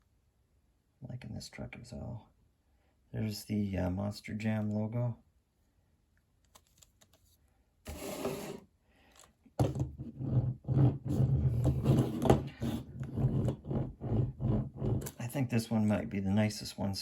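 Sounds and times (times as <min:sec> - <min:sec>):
toy truck scraping: 0:07.9 - 0:08.6.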